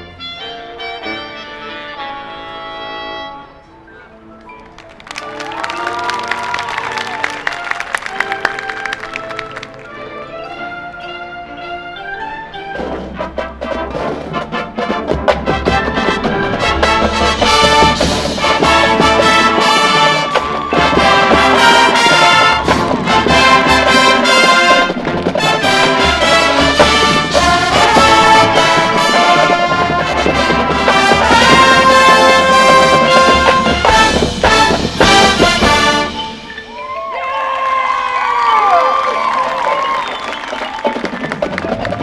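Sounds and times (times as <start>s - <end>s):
crowd cheering and whistling: 4.6s - 10.1s, 19.8s - 24.3s, 36.6s - 42.0s
marching band playing: 4.6s - 42.0s.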